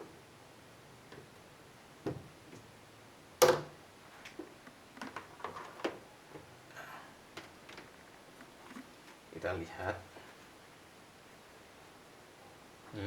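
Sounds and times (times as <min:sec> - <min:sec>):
light clicks and rustles: 0:07.3 - 0:09.2.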